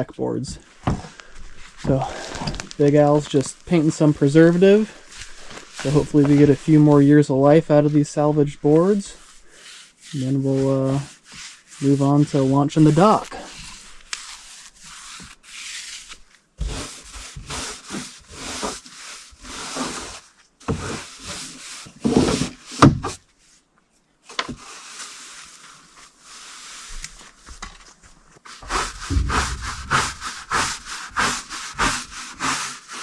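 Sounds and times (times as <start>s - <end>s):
paintbrush rasping on wood: 9.2s - 10.3s, 28.7s - 33.0s.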